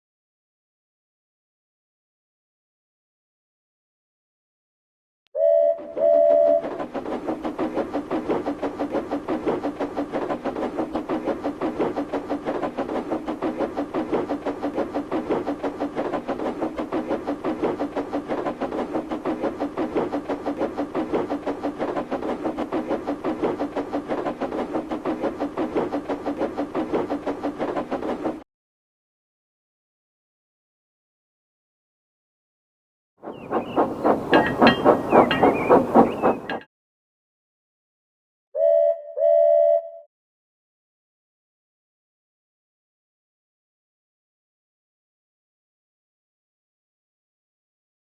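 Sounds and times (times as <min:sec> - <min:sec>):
steam locomotive whistle toots: 0:05.4 - 0:06.8, 0:38.6 - 0:40.0
steam engine chuffing: 0:05.7 - 0:28.4, 0:33.2 - 0:36.7
running rumble: 0:33.3 - 0:36.6.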